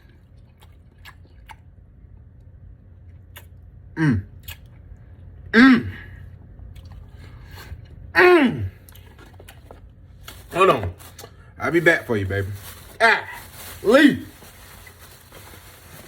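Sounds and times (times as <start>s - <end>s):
person chewing food: 0.0s - 3.7s, 4.3s - 5.5s, 6.3s - 8.0s, 8.8s - 11.4s.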